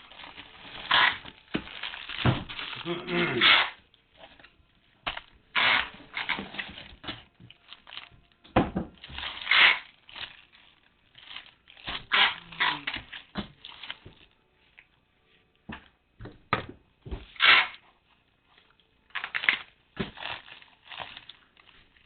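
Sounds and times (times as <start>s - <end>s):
packaging rustling and tearing: 0.0s - 4.5s, 5.1s - 14.4s, 18.6s - 22.0s.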